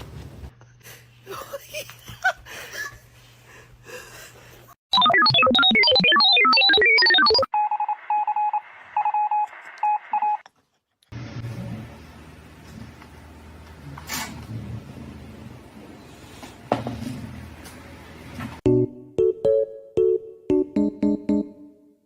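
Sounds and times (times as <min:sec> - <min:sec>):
electronic beeps: 0:04.9 - 0:10.4.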